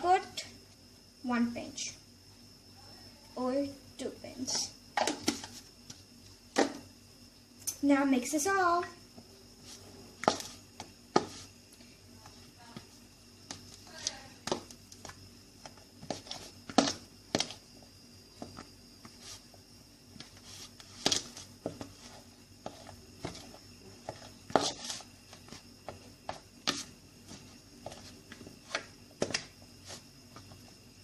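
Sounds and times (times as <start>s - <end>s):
fork mashing potato in a bowl: 20.2s - 30.5s.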